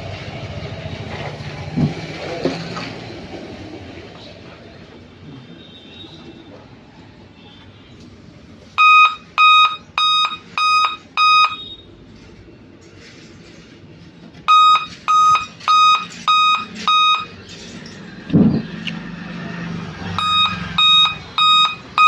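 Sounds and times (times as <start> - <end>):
short computer beeps: 8.8 - 11.9, 14.5 - 17.4, 20.2 - 22.0.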